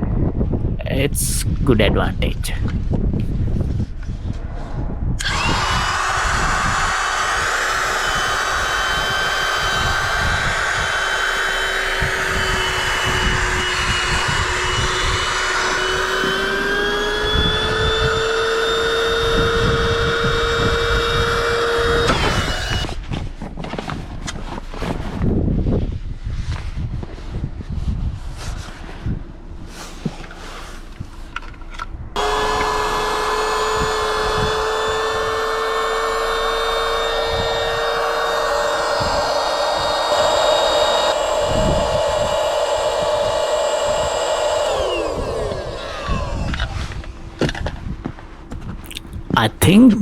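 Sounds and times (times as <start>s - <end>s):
electric air pump whining: 5.2s - 23.0s, 32.2s - 46.7s.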